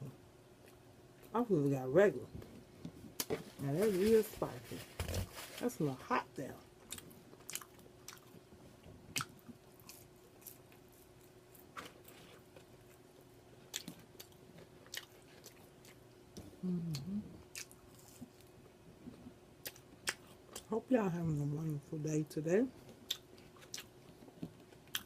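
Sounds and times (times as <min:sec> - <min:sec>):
faint steady hum: 0:00.0 - 0:25.0
mouth clicks and smacks chewing: 0:09.1 - 0:10.6, 0:23.0 - 0:25.0
woman humming: 0:16.6 - 0:17.4.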